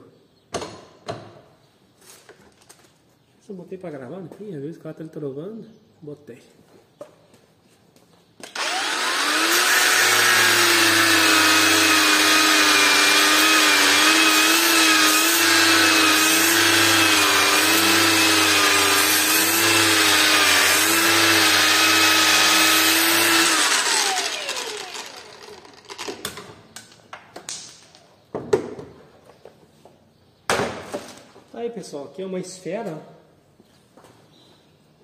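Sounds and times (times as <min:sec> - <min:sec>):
power tool whining: 0:08.4 - 0:26.3.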